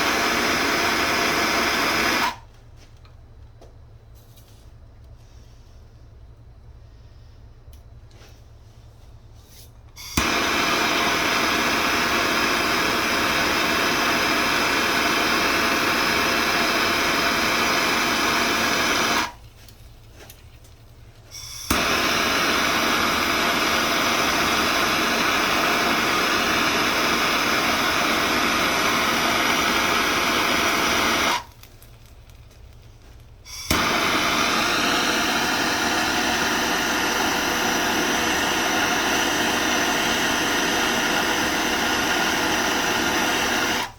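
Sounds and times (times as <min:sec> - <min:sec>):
torch flame hissing: 0:00.0 - 0:02.4, 0:10.0 - 0:19.5, 0:21.2 - 0:43.9
torch igniter click: 0:00.0 - 0:02.4, 0:09.9 - 0:19.4, 0:21.4 - 0:31.8, 0:33.5 - 0:43.9.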